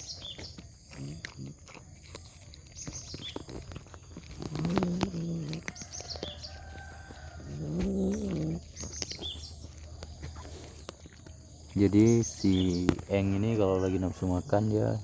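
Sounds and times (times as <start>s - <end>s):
cat calling while eating: 0.0s - 9.8s.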